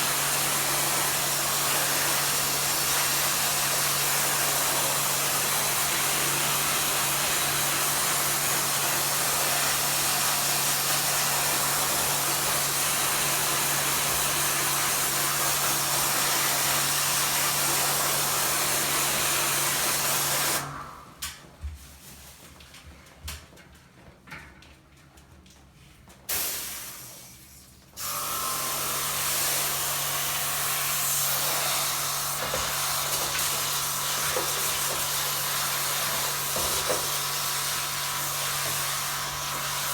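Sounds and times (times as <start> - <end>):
water jet hissing: 0.0 - 20.7, 26.3 - 27.3, 29.2 - 39.9
pressure washer pump humming: 0.0 - 20.8, 28.0 - 39.9.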